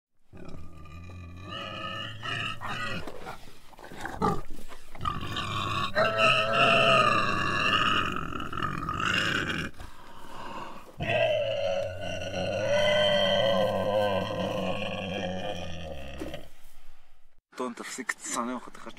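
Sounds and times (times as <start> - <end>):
animal growling: 0.3 - 16.6.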